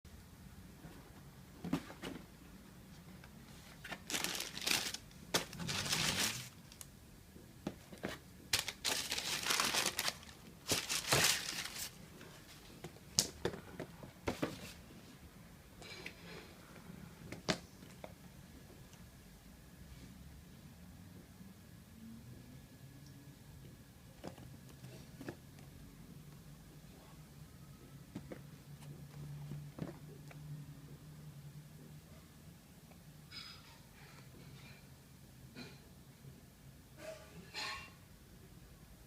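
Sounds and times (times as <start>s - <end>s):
paper packaging crinkling: 3.8s - 6.9s, 8.1s - 12.0s.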